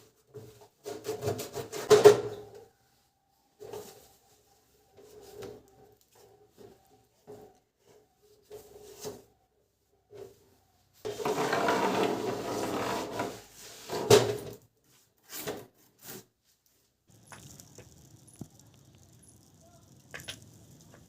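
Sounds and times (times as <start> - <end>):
scraping or rubbing: 11.0 - 14.1.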